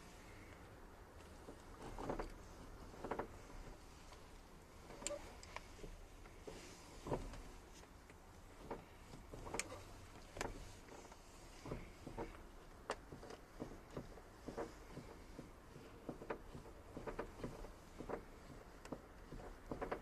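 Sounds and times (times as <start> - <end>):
van door hinge clicking and knocking: 8.5 - 20.0.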